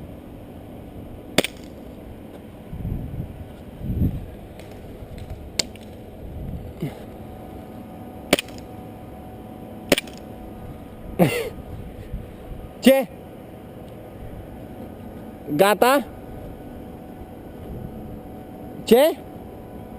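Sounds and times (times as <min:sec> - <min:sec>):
airsoft gun shots: 0:01.4 - 0:01.8, 0:08.3 - 0:08.7, 0:09.9 - 0:10.2.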